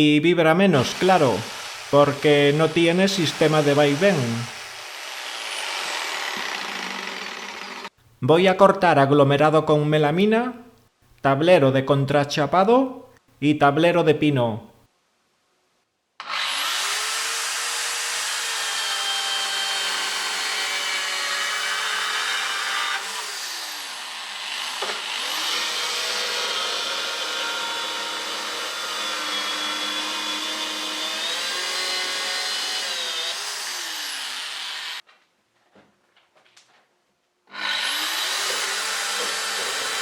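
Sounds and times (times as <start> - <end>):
saw cutting hiss: 0.7 - 7.9
saw motor whine: 0.9 - 7.9.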